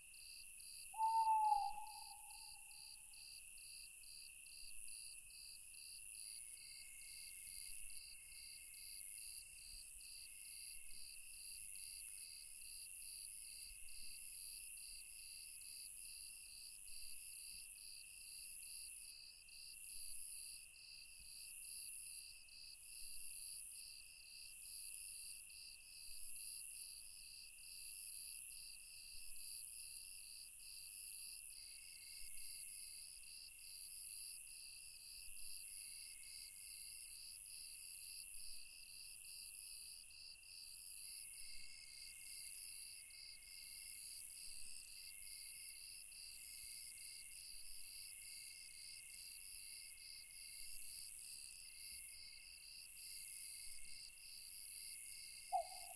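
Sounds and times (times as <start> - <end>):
steady high insect trill: 0.3 - 3.4, 41.2 - 55.9
pulsing cricket chirp: 1.0 - 3.4, 51.8 - 55.9.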